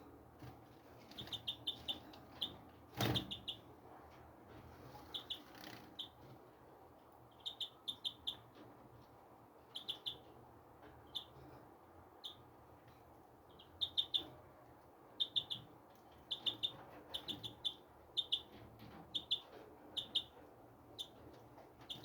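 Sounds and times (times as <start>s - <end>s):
small birds chirping: 1.0s - 3.7s, 5.0s - 6.3s, 7.2s - 8.6s, 9.6s - 10.4s, 11.0s - 11.5s, 12.1s - 12.6s, 13.4s - 14.4s, 15.1s - 22.0s.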